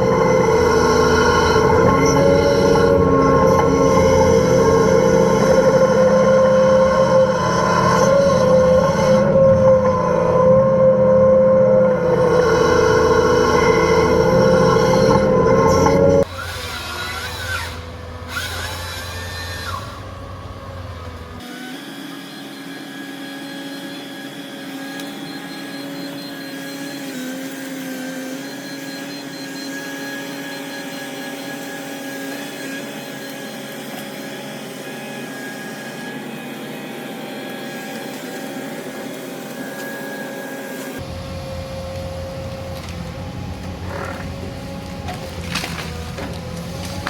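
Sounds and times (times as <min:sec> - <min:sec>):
excavator engine and hydraulics: 0:00.0 - 0:47.0.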